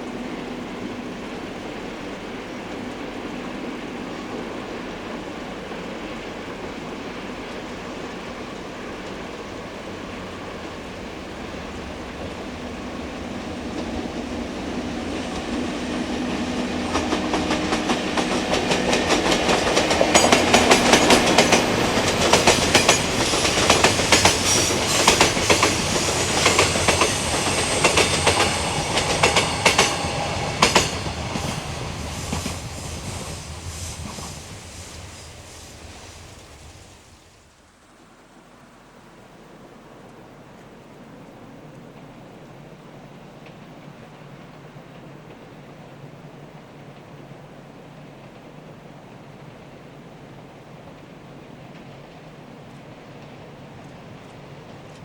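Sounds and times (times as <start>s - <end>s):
electric train passing: 0.0s - 55.0s
train wheels clicking over rail joints: 7.4s - 37.2s.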